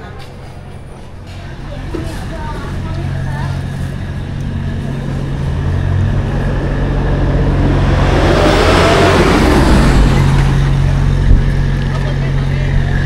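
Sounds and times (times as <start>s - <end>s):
low engine hum: 0.0s - 13.0s
vehicle passing by: 3.0s - 13.0s.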